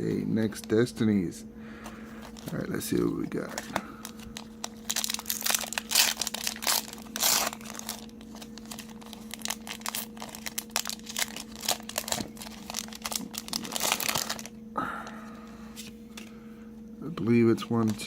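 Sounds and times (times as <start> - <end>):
steady low hum: 0.0 - 18.0
foil wrapper crinkling and tearing: 2.2 - 14.6.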